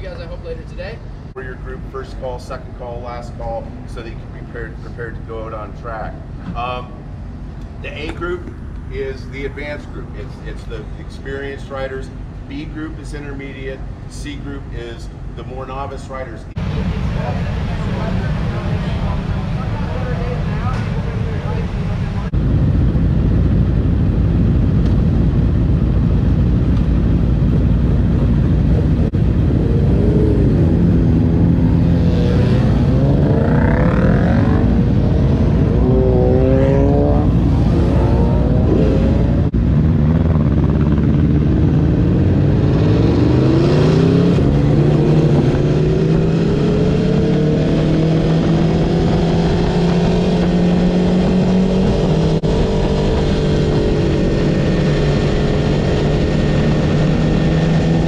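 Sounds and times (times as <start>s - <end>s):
wind and road noise: 0.0s - 58.0s
motorcycle engine accelerating: 16.6s - 58.0s.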